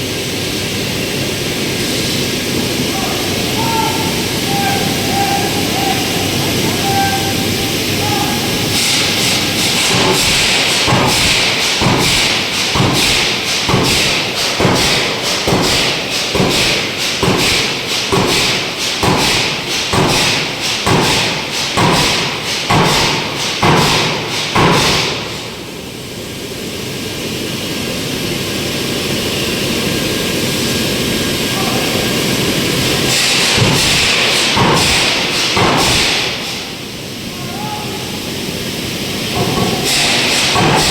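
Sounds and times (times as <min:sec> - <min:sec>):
steady machinery noise: 0:00.0 - 0:40.9
forging hammer striking metal: 0:08.8 - 0:25.4, 0:33.1 - 0:36.6, 0:39.4 - 0:40.9.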